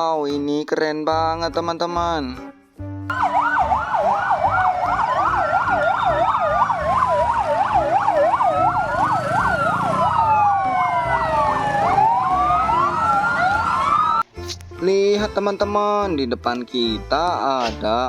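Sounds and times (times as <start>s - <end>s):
siren wails: 3.1s - 14.2s
siren yelp: 3.1s - 14.2s.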